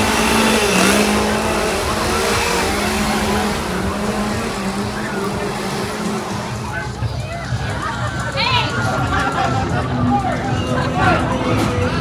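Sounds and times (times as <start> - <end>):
broad rushing noise: 0.0 - 8.4
tram low hum: 0.0 - 9.4.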